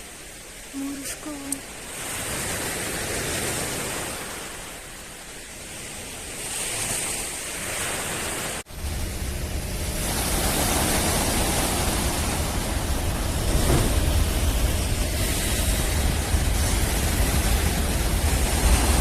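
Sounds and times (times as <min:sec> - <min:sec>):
small waves washing on shore: 0:00.0 - 0:19.0
wind on microphone: 0:08.8 - 0:19.0.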